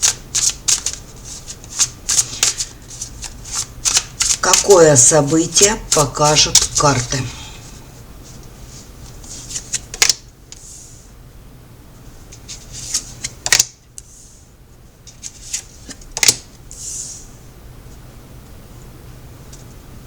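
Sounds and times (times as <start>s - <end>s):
cards snapping and clicking: 1.7s - 4.7s, 9.6s - 10.2s, 13.4s - 13.8s, 15.5s - 16.5s.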